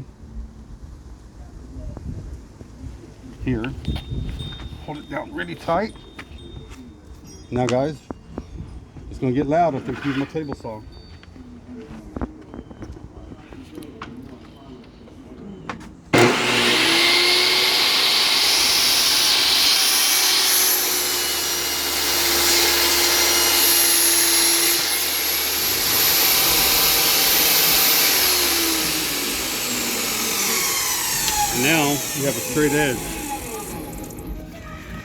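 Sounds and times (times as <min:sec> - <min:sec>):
table saw whining: 0:15.7 - 0:35.0
saw blade winding down: 0:16.1 - 0:34.9.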